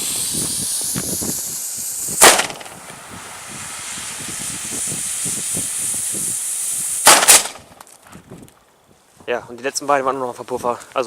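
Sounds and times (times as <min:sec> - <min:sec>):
fuse hissing: 0:00.0 - 0:07.9
firecracker sharp crack: 0:00.0 - 0:08.0.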